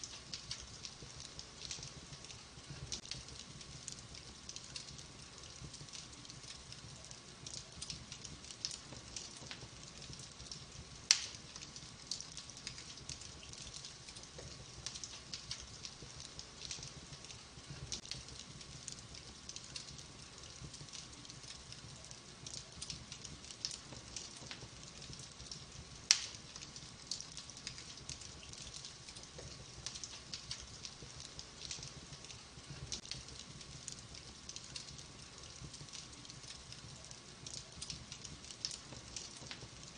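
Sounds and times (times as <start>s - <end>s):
wood fire crackling: 0.0s - 39.9s
sharp loud pops from fire: 11.0s - 11.7s, 26.0s - 26.6s.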